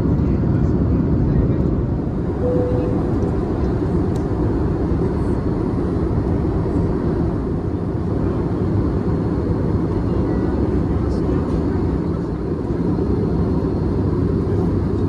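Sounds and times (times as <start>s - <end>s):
airliner cabin engine rumble: 0.0s - 15.0s.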